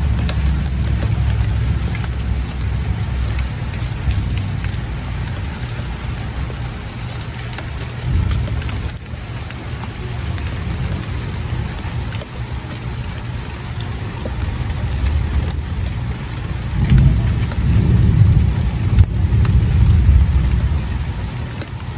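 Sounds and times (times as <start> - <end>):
low rumble: 0.0 - 7.0, 8.0 - 12.2
rain falling: 0.0 - 21.9.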